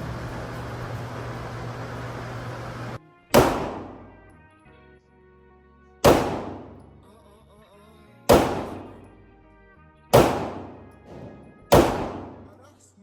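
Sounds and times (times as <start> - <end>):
gunshots with echo: 3.3 - 4.2, 6.0 - 7.0, 8.3 - 9.1, 10.1 - 12.6.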